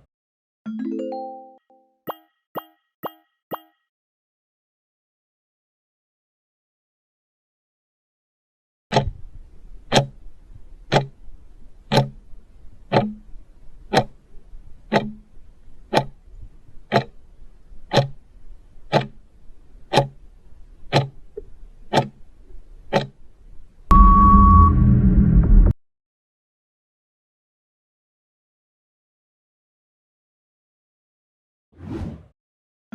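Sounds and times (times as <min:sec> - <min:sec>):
countdown timer ticking: 0:00.7 - 0:03.8, 0:09.9 - 0:10.2, 0:10.9 - 0:11.2, 0:11.9 - 0:12.2, 0:12.9 - 0:14.2, 0:14.9 - 0:15.3, 0:15.9 - 0:16.2, 0:16.9 - 0:17.2, 0:17.9 - 0:18.2, 0:18.9 - 0:19.2, 0:19.9 - 0:20.2, 0:20.9 - 0:21.2, 0:21.9 - 0:22.2, 0:22.9 - 0:23.1
steady high beep: 0:23.9 - 0:24.9.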